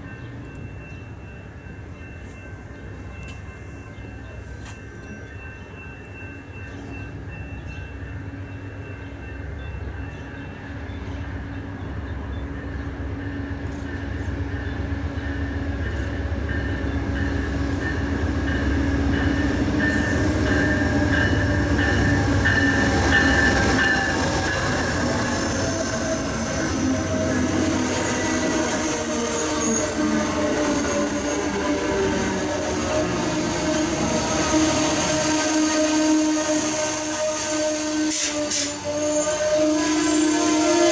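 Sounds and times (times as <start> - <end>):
train rumbling: 0.0 - 40.9
wheels squealing on rails: 9.7 - 40.9.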